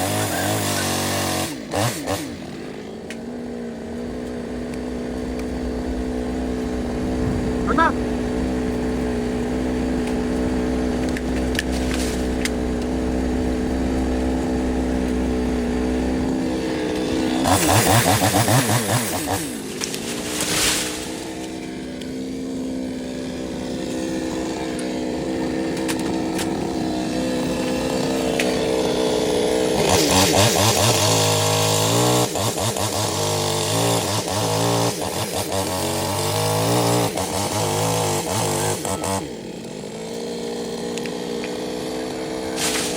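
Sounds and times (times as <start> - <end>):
chainsaw revving and cutting wood: 0.0 - 42.9.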